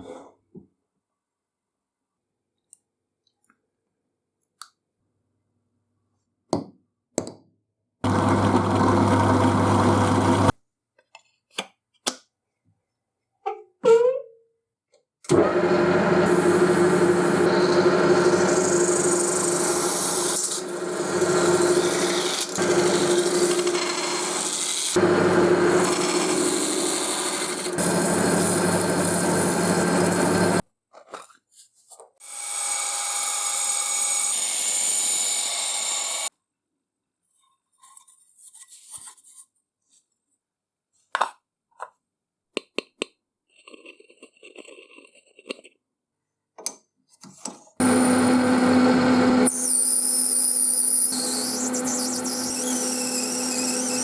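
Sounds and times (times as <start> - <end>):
machine tool cutting: 16.2 - 30.6, 47.8 - 54.0.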